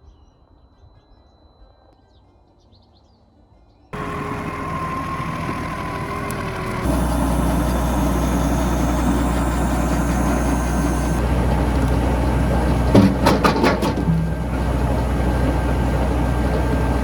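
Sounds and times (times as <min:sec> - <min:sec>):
tractor engine running: 0:04.0 - 0:17.0
sharp clattering knocks: 0:12.6 - 0:14.5.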